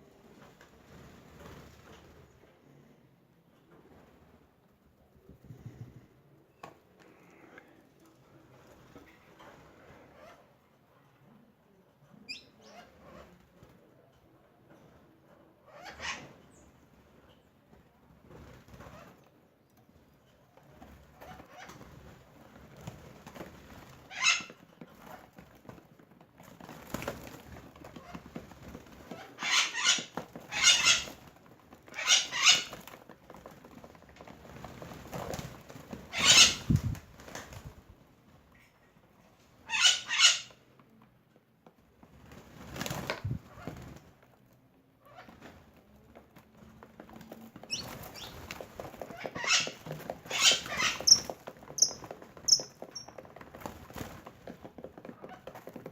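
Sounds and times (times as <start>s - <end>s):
birds wings flapping: 20.7s - 38.0s, 42.0s - 44.3s, 45.2s - 55.9s.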